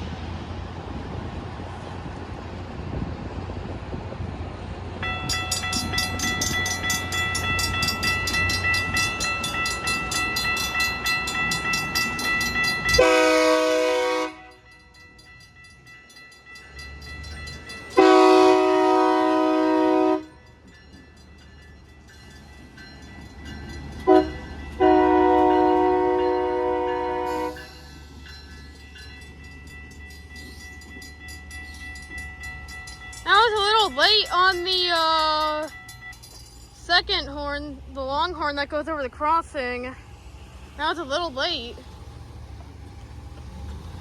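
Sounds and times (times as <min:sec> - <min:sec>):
crossing warning bell ringing: 0:05.0 - 0:44.0
locomotive air horn blasts: 0:13.0 - 0:14.6, 0:18.0 - 0:20.4, 0:24.0 - 0:27.6
low engine rumble: 0:32.2 - 0:44.0.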